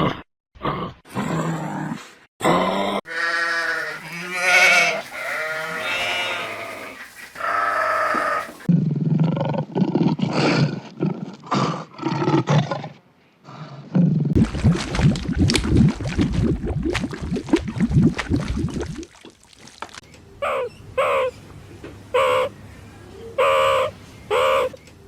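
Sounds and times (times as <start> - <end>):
animal calls bending in pitch: 3.1 - 8.7
short animal calls: 3.1 - 8.7.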